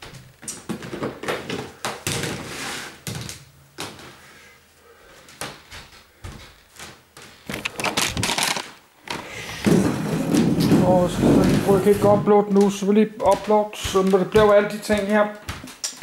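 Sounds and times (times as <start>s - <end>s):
household items knocking and clicking: 7.5s - 16.0s.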